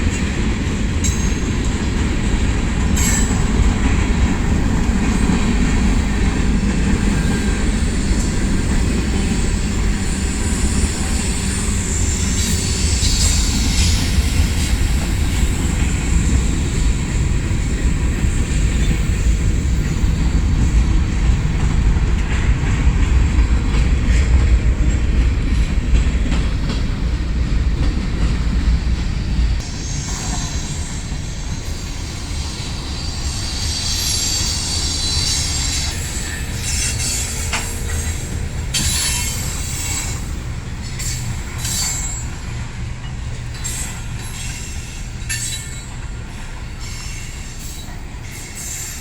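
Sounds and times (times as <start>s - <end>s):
train wheels rumbling on rail: 0.0s - 49.0s
high wheel squeal: 6.8s - 17.6s, 29.6s - 49.0s.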